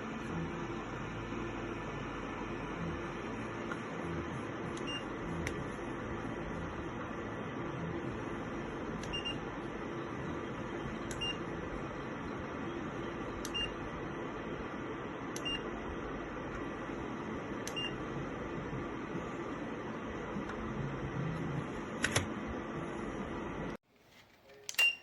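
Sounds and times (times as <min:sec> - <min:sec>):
fan heater blowing and humming: 0:00.0 - 0:25.0
heater click: 0:04.7 - 0:05.6, 0:11.0 - 0:11.5, 0:13.4 - 0:13.8, 0:15.2 - 0:15.7, 0:21.9 - 0:22.4, 0:23.7 - 0:25.0.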